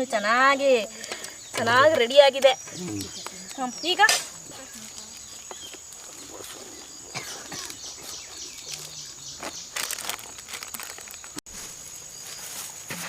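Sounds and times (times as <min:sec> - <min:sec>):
birds chirping: 0:00.0 - 0:11.4
high insect drone: 0:00.0 - 0:13.0
crinkling handling noise: 0:04.4 - 0:13.0.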